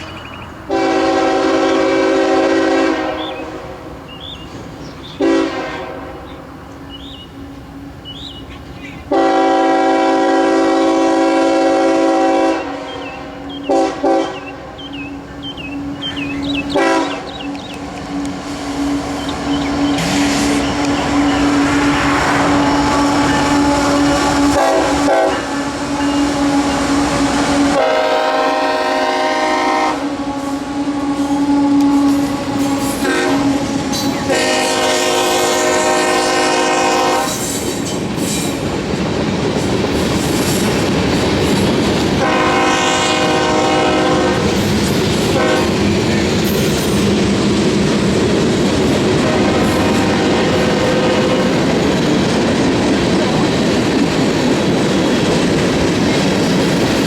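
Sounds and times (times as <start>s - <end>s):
freight train rumbling and clacking: 0.0s - 57.0s
locomotive horn blasts: 0.7s - 3.9s, 5.2s - 6.5s, 9.1s - 37.6s, 42.1s - 44.6s, 45.3s - 46.2s, 49.0s - 51.7s.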